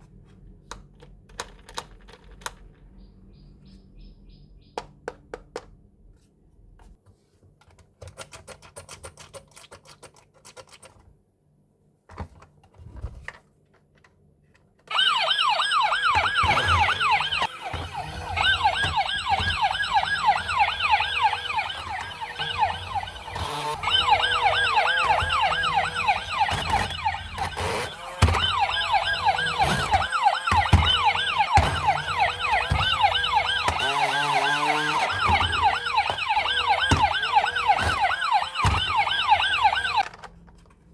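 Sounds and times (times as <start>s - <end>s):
toy electronic siren wailing: 14.9s - 40.0s.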